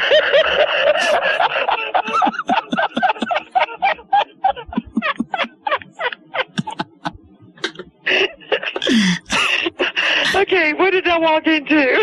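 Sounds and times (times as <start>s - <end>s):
laughter in short bursts: 0.0s - 8.9s.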